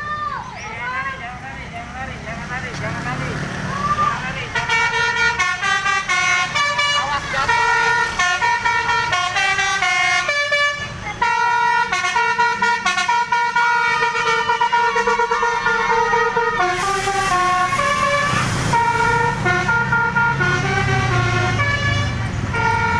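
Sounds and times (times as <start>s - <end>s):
engine rumble: 0.0s - 22.9s
musical bus horn melody: 4.5s - 22.9s
air hiss: 16.7s - 19.4s.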